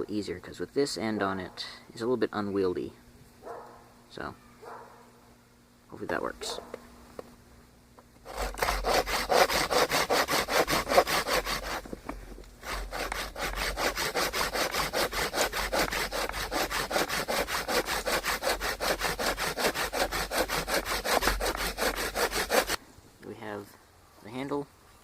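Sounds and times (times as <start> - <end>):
hand saw cutting wood: 8.2 - 12.0, 12.6 - 22.8.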